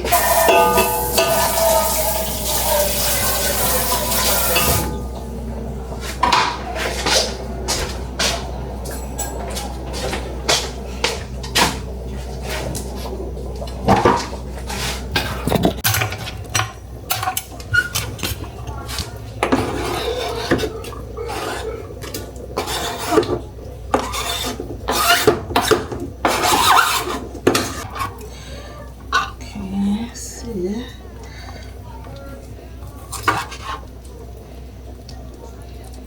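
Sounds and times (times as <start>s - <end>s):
metal utensils clinking: 0.0s - 5.2s
low steady hum: 0.0s - 15.9s.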